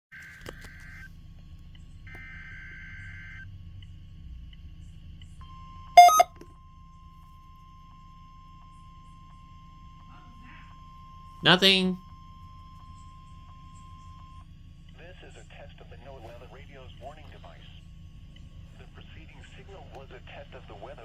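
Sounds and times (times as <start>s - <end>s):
faint steady alarm tone: 1.4s - 16.0s
loud double beep: 6.0s - 6.3s.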